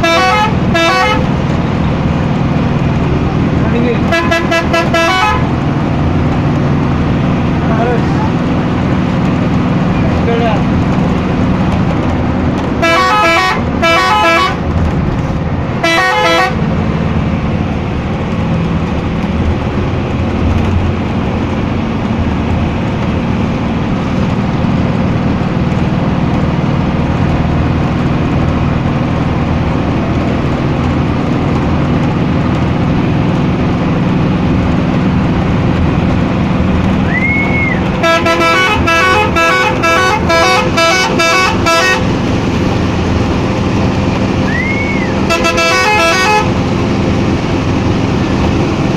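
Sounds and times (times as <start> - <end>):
multi-tone air horn blasts: 0.0 - 1.2, 4.1 - 5.5, 12.8 - 14.6, 15.8 - 16.6, 38.0 - 42.0, 44.5 - 46.6
bus engine droning: 0.0 - 48.9.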